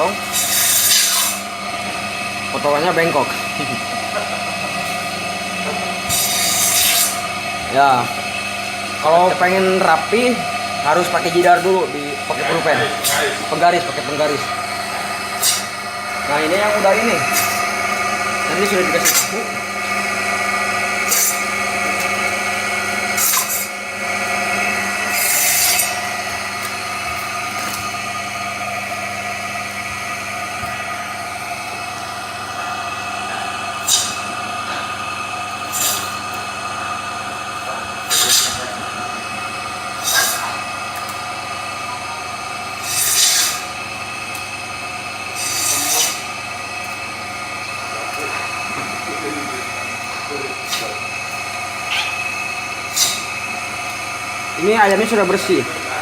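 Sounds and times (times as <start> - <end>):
band saw humming: 0.0 - 56.0
electric cutting machine running: 0.0 - 56.0
saw blade hissing through meat: 0.2 - 1.5, 6.0 - 7.2, 15.4 - 15.7, 17.3 - 17.6, 21.0 - 21.5, 23.2 - 23.7, 25.1 - 26.0, 33.8 - 34.2, 35.6 - 36.2, 38.0 - 38.6, 40.0 - 40.6, 42.8 - 43.7, 45.3 - 46.3, 52.9 - 53.3.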